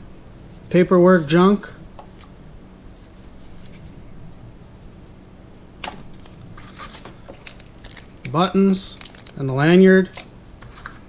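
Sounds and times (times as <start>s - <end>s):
paper and plastic being handled: 5.8s - 11.0s.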